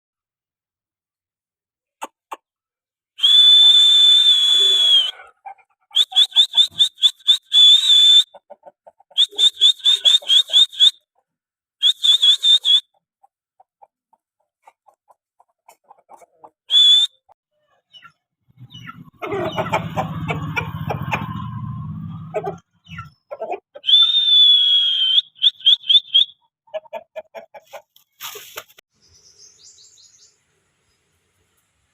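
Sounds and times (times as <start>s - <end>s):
shrill whistle blasts and toots: 3.2s - 5.2s, 5.9s - 8.4s, 9.2s - 11.0s, 11.8s - 12.9s, 16.7s - 17.3s, 23.8s - 26.4s.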